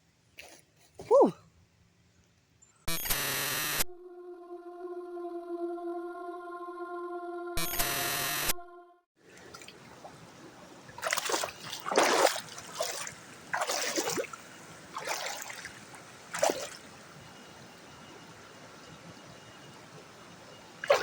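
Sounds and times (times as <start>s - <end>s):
running water trickling: 9.2s - 17.3s
footsteps splashing in water: 10.9s - 16.8s.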